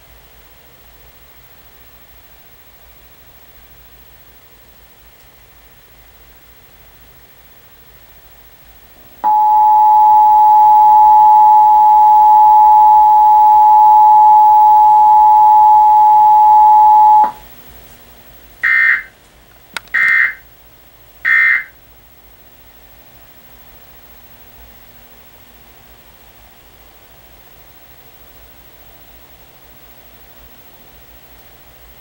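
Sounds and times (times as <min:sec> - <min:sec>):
two-tone alarm: 0:09.2 - 0:17.4, 0:18.6 - 0:19.1, 0:20.0 - 0:20.4, 0:21.3 - 0:21.8
digital data squawks: 0:18.6 - 0:19.1, 0:20.0 - 0:20.4, 0:21.3 - 0:21.7.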